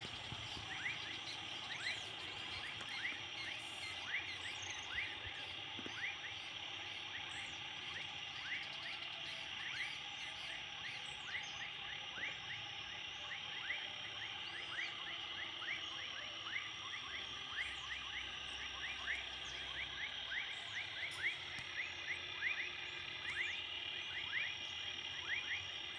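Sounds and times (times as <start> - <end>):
frogs and insects high drone: 0.0 - 25.9.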